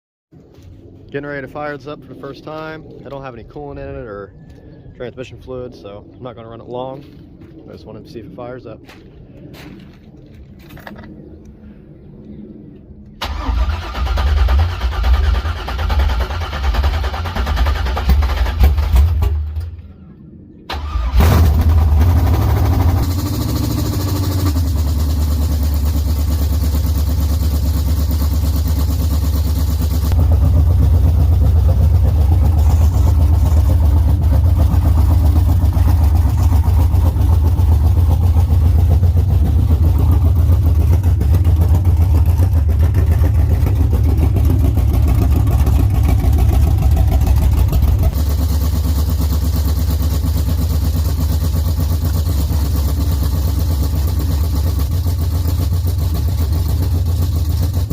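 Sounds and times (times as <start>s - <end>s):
car engine starting and idling: 13.1s - 19.9s, 20.5s - 57.9s.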